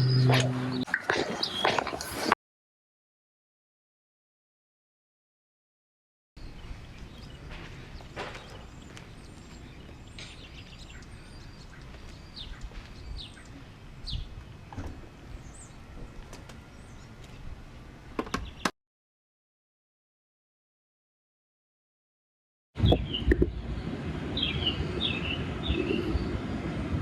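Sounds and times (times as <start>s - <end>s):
small birds chirping: 0.0s - 2.2s, 6.4s - 17.6s, 18.2s - 18.7s, 24.4s - 26.7s.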